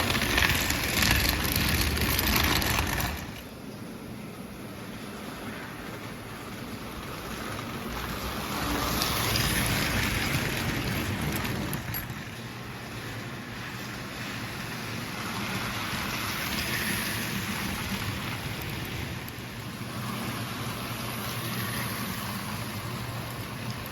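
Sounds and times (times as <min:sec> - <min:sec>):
model train rumbling on track: 0:00.0 - 0:23.9.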